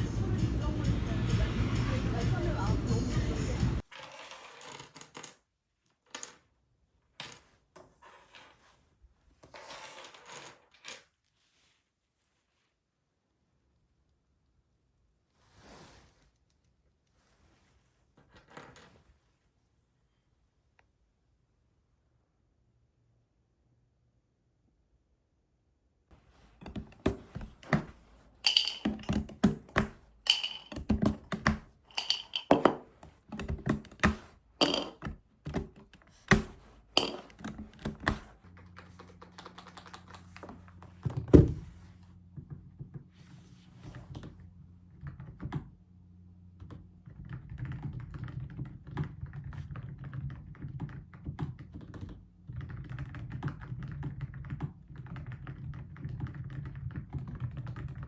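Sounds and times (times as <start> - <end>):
keyboard typing: 26.4 - 40.5.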